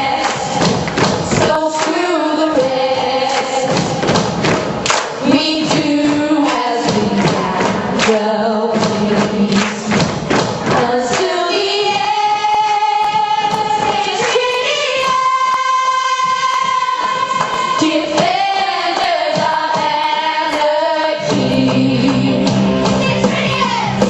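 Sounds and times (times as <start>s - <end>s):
group of voices singing: 0.0s - 24.0s
backing track with heavy beat: 3.3s - 11.3s, 21.2s - 24.0s.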